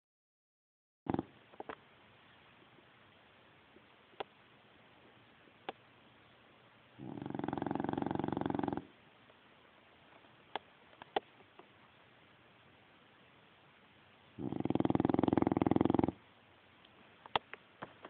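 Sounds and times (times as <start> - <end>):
dog snoring: 1.1 - 1.4, 7.0 - 9.0, 14.4 - 16.2.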